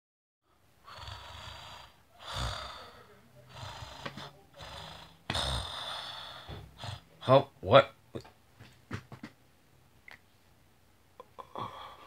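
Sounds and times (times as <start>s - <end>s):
person fake snoring: 0.8s - 7.1s.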